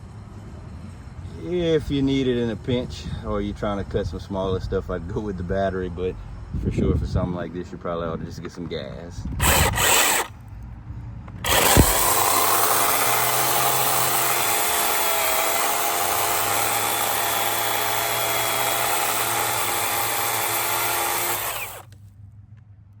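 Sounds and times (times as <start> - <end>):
electric chainsaw motor whine: 9.4 - 10.3, 11.4 - 21.9.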